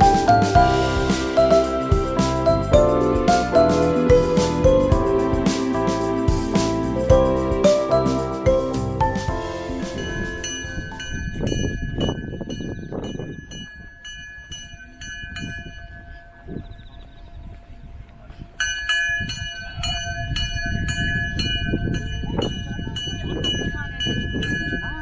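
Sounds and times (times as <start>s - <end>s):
bell-like warning signal ringing: 0.0s - 11.2s.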